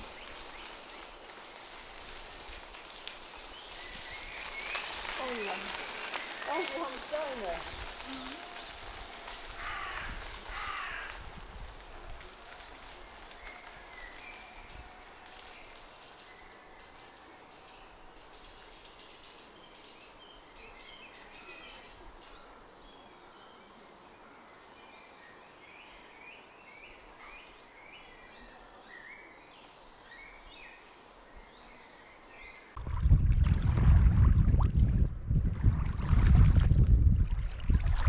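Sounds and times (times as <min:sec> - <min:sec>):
songbirds singing: 0:00.0 - 0:11.1, 0:12.8 - 0:32.8
wind buffeting microphone: 0:00.0 - 0:15.2, 0:32.8 - 0:38.0.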